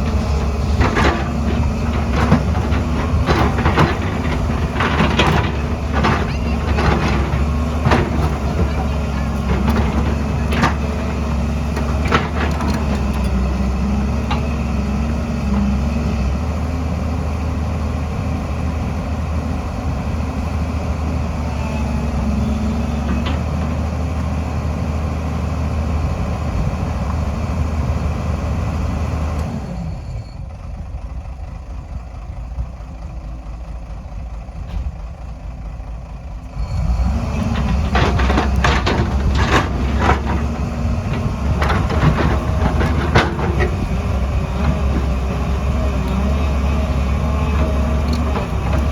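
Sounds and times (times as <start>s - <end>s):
diesel engine running: 0.0s - 48.9s.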